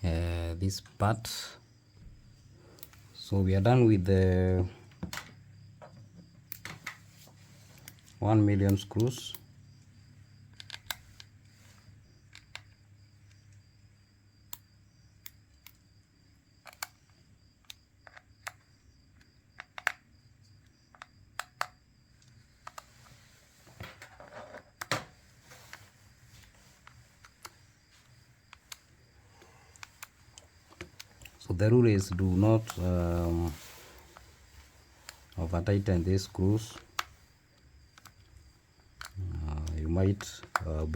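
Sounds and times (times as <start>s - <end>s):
screwdriver clicks and taps: 10.5s - 11.3s, 16.6s - 17.0s, 19.2s - 20.0s, 20.9s - 22.9s
scraping rustle: 29.4s - 37.4s.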